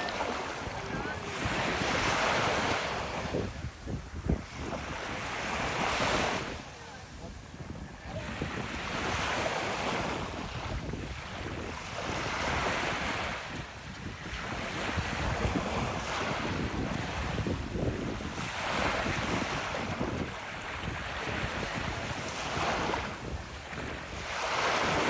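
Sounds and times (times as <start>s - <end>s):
ocean surf breaking: 0.0s - 13.6s
wind buffeting microphone: 0.0s - 25.0s.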